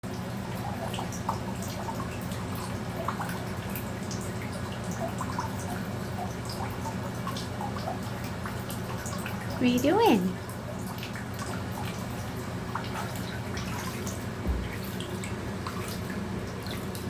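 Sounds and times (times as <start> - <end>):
water dripping: 0.1 - 17.0.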